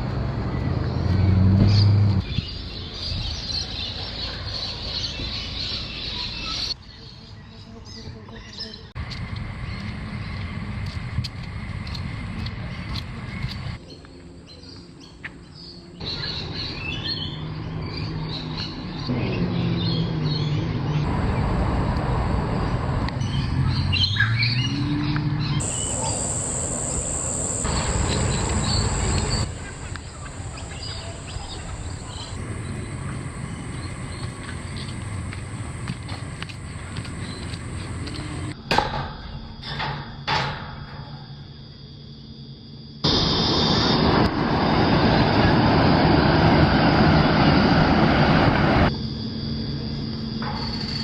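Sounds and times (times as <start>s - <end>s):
outdoor background noise: 0.0s - 51.0s
birds chirping: 0.4s - 10.6s, 12.5s - 21.5s, 22.5s - 38.6s.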